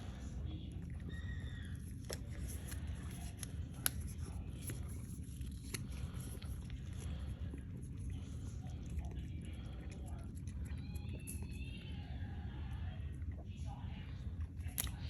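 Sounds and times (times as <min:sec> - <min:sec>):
cat licking and chewing: 0:00.0 - 0:15.0
low room hum: 0:00.0 - 0:15.0.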